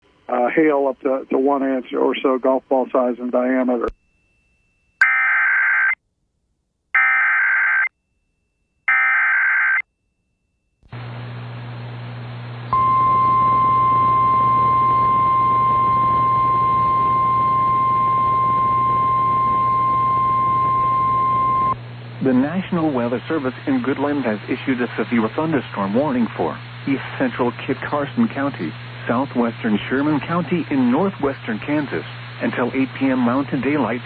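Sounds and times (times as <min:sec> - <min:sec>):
steady warning alarm tone: 0:07.0 - 0:10.8, 0:12.7 - 0:21.8
low hum: 0:09.9 - 0:32.4
radio hiss: 0:22.2 - 0:34.0.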